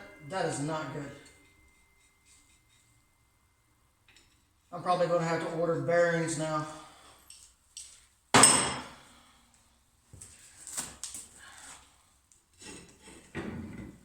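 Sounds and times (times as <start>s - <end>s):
metal clank ringing: 0.0s - 4.6s, 8.4s - 9.0s
tools knocking and clattering: 4.0s - 4.5s, 7.3s - 9.0s.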